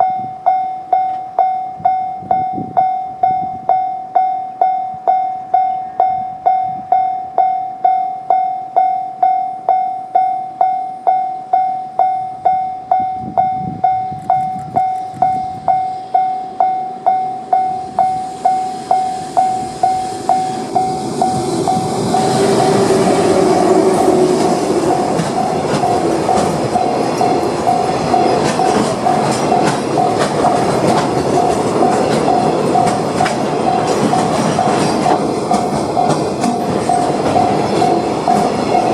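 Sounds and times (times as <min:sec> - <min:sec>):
brief high tone: 0:00.0 - 0:23.2
level crossing alarm ringing: 0:00.0 - 0:38.9
train wheels clattering over joints: 0:19.3 - 0:38.9.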